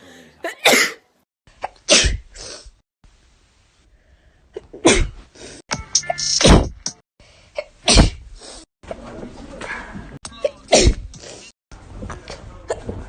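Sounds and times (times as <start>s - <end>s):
woman sneezing: 0.5s - 1.0s.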